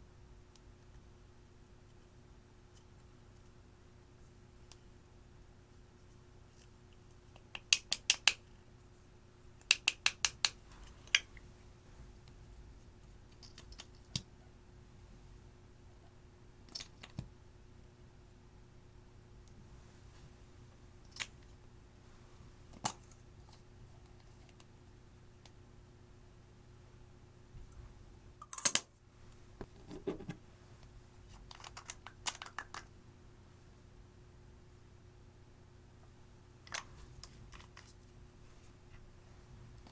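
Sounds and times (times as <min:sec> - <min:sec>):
crackling and clicking of slime: 0:31.4 - 0:32.9.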